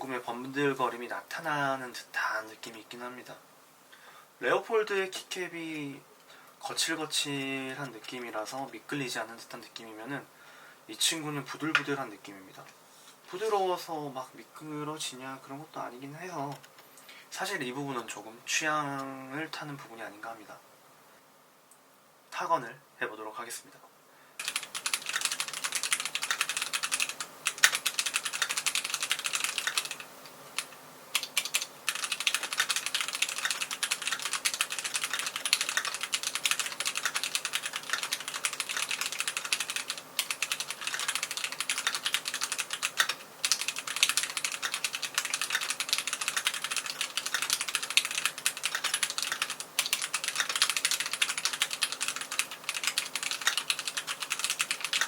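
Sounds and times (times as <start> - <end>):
mechanical keyboard typing: 24.4 - 55.0.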